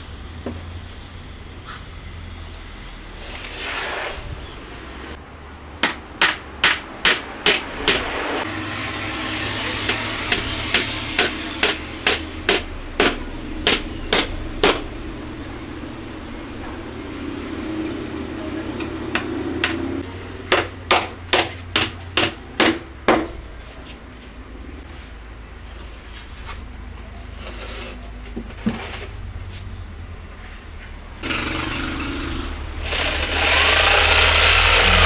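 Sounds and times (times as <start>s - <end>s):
hammer striking wooden box: 5.8s - 8.0s.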